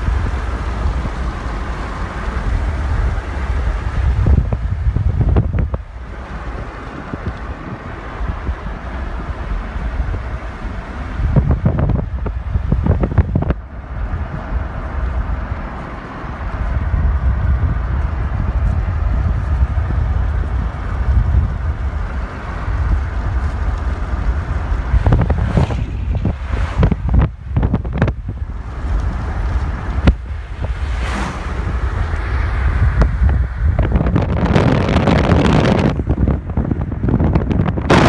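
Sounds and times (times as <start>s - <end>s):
steady rushing noise: 0.0s - 38.0s
wind buffeting microphone: 0.0s - 38.0s.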